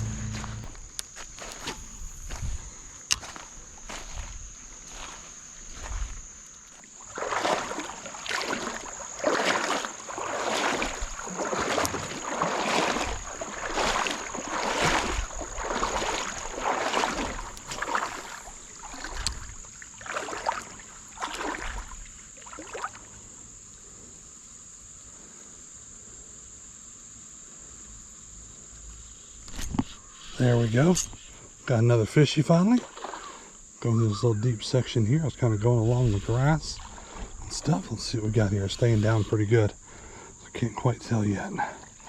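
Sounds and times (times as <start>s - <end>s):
insects droning: 0.0s - 42.0s
water swishing: 6.8s - 23.2s, 32.6s - 33.5s, 35.4s - 39.5s.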